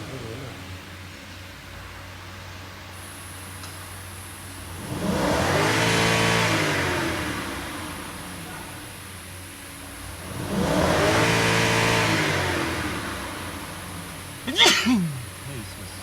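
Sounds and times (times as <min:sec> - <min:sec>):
car engine revving: 0:04.7 - 0:08.4, 0:10.0 - 0:14.4.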